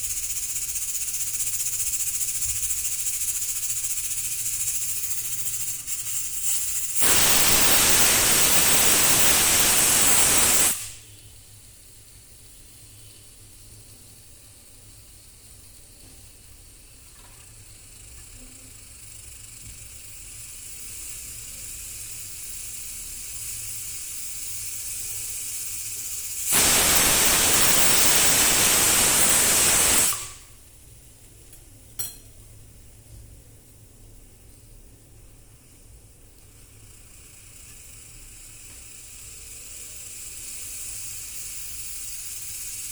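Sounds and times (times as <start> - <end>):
steam hissing: 0.0 - 14.2, 14.8 - 30.8, 35.6 - 42.9
pressure cooker whistle: 6.9 - 11.1, 26.4 - 30.6.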